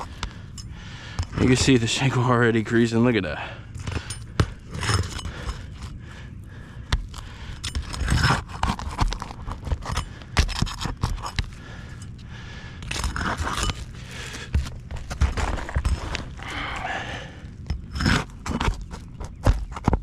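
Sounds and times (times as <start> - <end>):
shingles scraping and crunching: 6.8 - 20.0.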